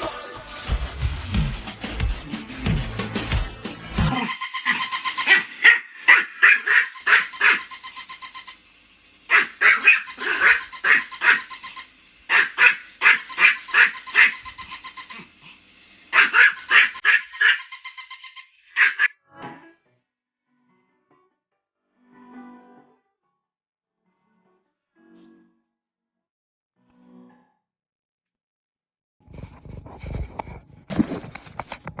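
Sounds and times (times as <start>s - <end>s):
dog yapping rapidly: 4.6s - 8.6s, 9.3s - 17.6s, 18.8s - 19.1s, 30.9s - 31.8s.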